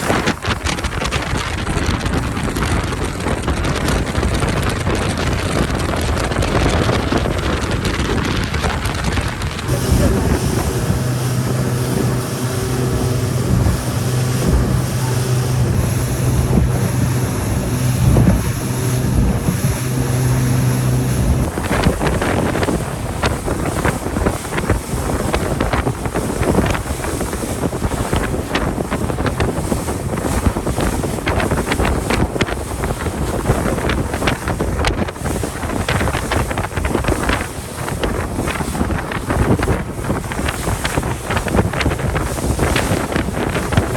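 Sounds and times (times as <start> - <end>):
rushing water: 0.0 - 2.4, 8.6 - 43.9
wind buffeting microphone: 0.0 - 43.9
boat engine humming: 8.8 - 43.9.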